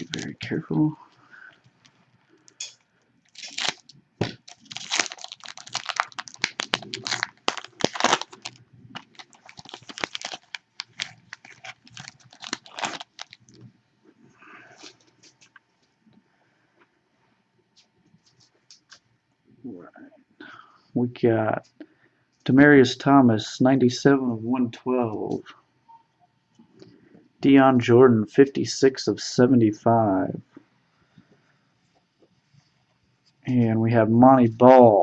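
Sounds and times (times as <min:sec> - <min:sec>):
wrappers tearing and crinkling: 0:00.0 - 0:00.4, 0:03.2 - 0:13.6.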